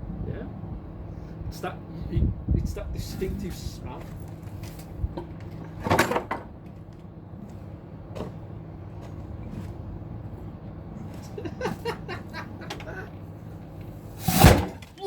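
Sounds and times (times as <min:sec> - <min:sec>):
microwave oven humming: 0:04.2 - 0:15.0.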